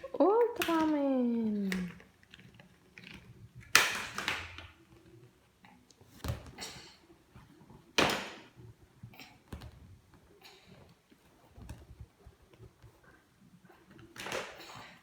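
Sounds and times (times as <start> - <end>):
plastic toys clicking: 0.4 - 4.8.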